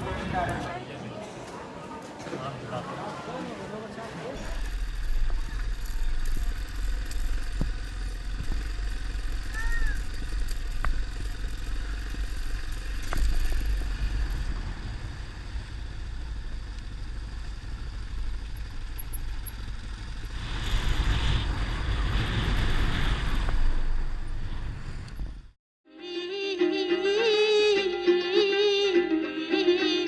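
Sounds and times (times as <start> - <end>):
motorcycle engine rumbling: 4.3 - 25.6.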